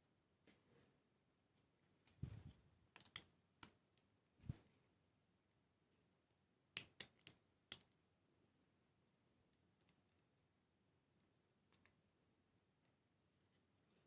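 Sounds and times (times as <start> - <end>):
small plastic parts clicking: 2.9 - 3.8.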